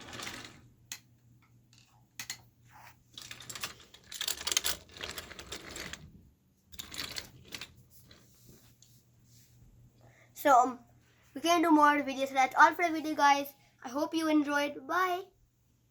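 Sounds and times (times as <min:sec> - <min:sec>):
wooden toy trains clattering: 0:03.2 - 0:06.1, 0:06.7 - 0:08.2.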